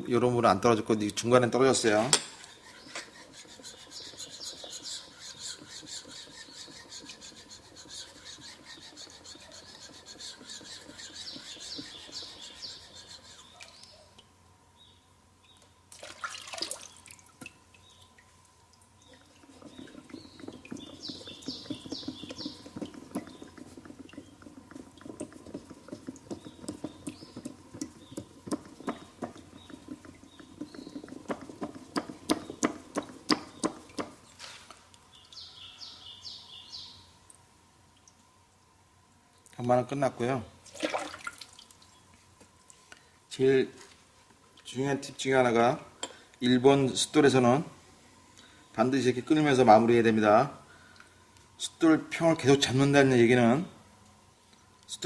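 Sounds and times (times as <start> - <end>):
blade scraping on wet whetstone: 1.6 - 13.8, 19.4 - 34.2.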